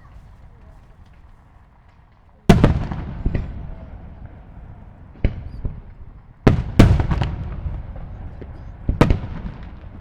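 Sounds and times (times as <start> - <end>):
fireworks pops: 0.0 - 3.6
fireworks booming: 0.0 - 10.0
fireworks crackling: 0.0 - 10.0.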